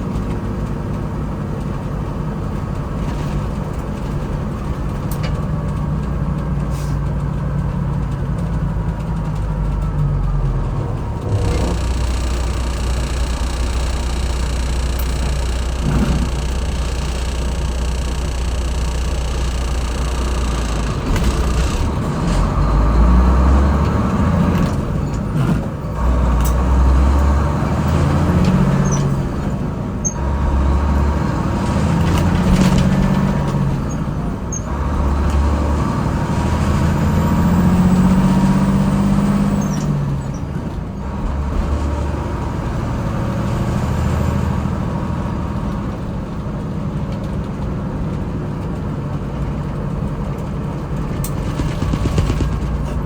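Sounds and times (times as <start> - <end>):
truck engine shifting through gears: 0.0 - 53.0.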